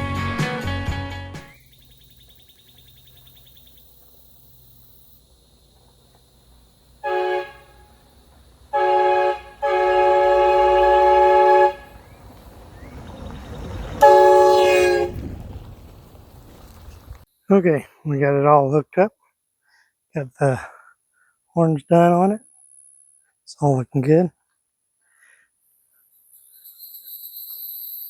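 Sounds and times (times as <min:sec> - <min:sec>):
air horn blasts: 0:07.0 - 0:08.1, 0:08.7 - 0:12.2, 0:13.9 - 0:15.2.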